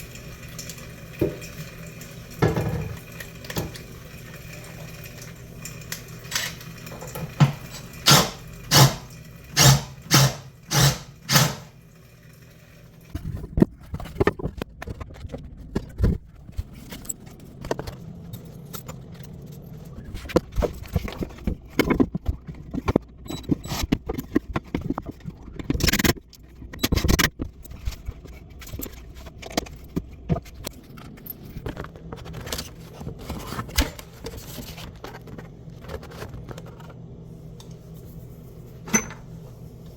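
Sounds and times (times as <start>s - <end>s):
metal tools clinking and knocking: 38.9s - 39.3s.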